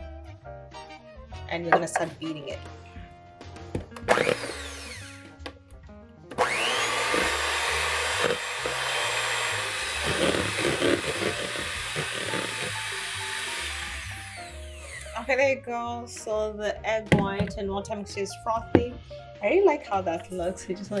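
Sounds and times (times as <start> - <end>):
electric mixer whipping: 3.8 - 5.5, 6.3 - 15.4.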